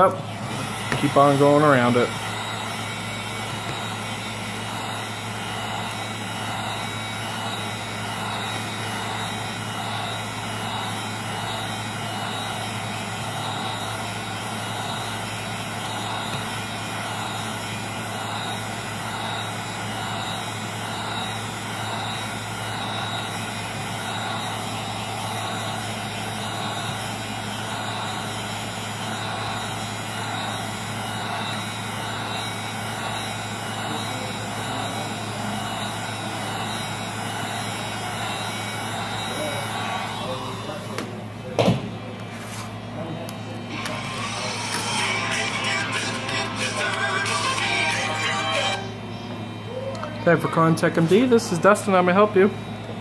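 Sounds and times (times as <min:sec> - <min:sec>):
heat gun blowing air: 0:00.0 - 0:41.2.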